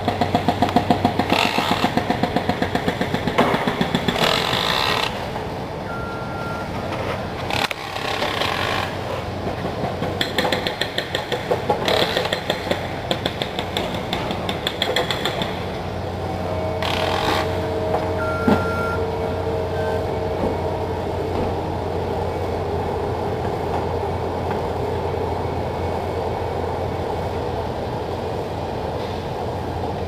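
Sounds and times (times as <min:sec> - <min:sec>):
mechanical drone with low hum: 0:14.2 - 0:28.8.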